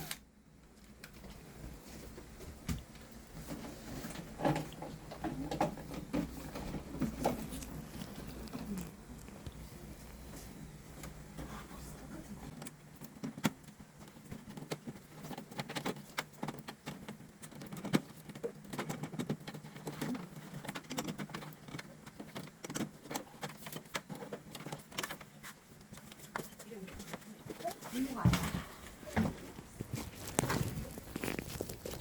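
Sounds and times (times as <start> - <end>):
faint low hum: 0.0 - 32.0
plastic and metal parts clicking: 12.5 - 26.4.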